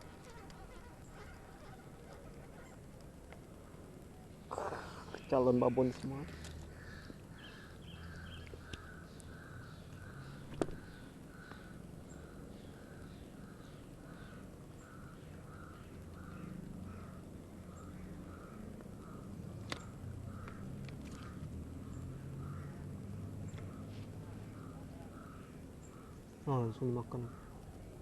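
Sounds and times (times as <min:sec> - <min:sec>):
repeated animal call: 0:00.0 - 0:02.9.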